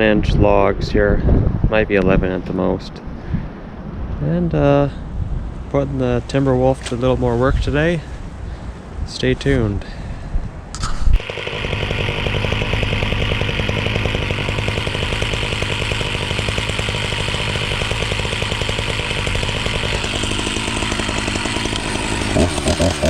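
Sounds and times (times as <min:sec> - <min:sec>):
chainsaw running: 0:11.2 - 0:23.0.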